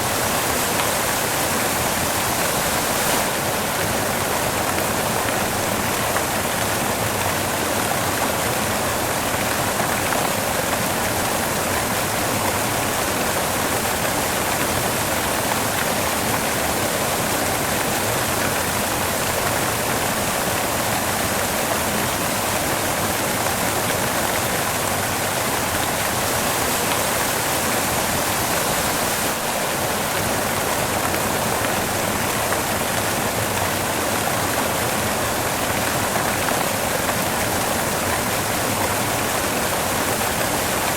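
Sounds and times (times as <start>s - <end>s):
steady white noise hiss: 0.0s - 40.9s.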